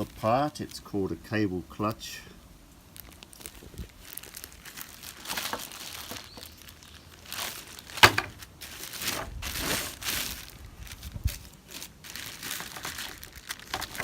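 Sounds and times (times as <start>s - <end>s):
plastic packaging crinkling: 2.9s - 14.0s.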